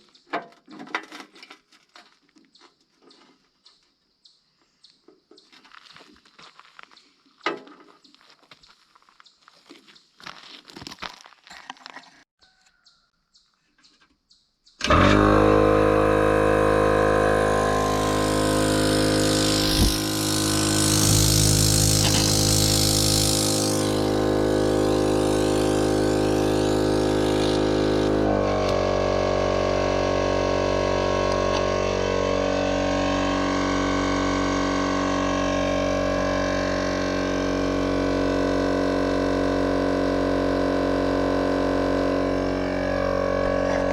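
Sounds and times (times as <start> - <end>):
tire compressor running: 14.8 - 43.9.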